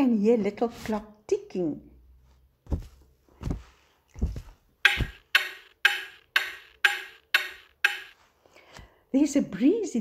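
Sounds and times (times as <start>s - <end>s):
dull low knocks: 4.2s - 8.1s
clock-like ticking: 4.8s - 8.2s.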